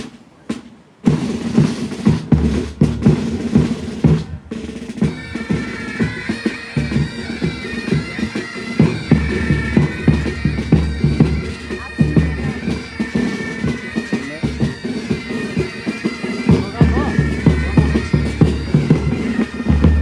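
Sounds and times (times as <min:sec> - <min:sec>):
drums playing rhythmic beat: 0:00.0 - 0:20.0
bagpipes playing held notes: 0:04.6 - 0:20.0.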